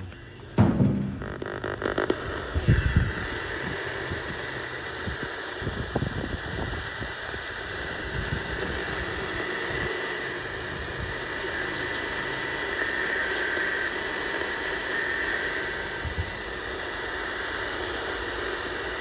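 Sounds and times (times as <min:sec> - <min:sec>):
radio static hiss: 0:00.0 - 0:19.0
low knocks: 0:00.6 - 0:01.6.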